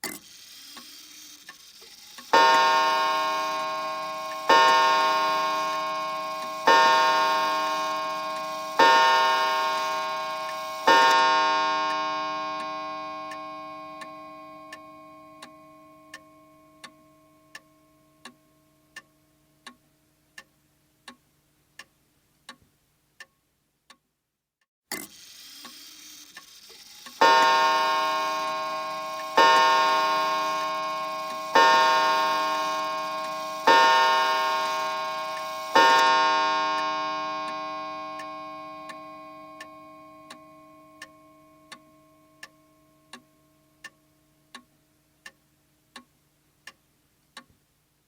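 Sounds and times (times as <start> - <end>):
clock ticking: 0.0 - 24.0, 24.9 - 47.6
wall clock chime striking: 2.3 - 18.1, 27.2 - 43.8.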